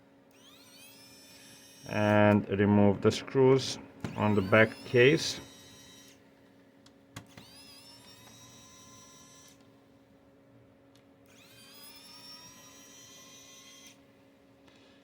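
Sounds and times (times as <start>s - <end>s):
faint steady hum: 0.0s - 15.0s
electric screwdriver whining: 0.3s - 1.9s, 4.0s - 6.2s, 7.2s - 9.7s, 11.3s - 14.0s.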